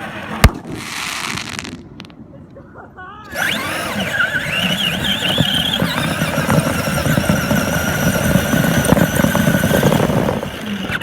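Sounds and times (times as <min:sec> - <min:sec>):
crackly hiss of firework: 0:00.4 - 0:02.1.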